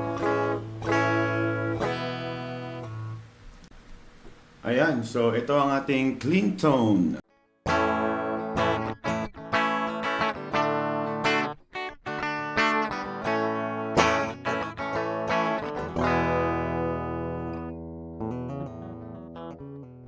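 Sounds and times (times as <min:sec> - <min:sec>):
clean electric guitar chords: 0:00.0 - 0:03.4, 0:07.7 - 0:20.0.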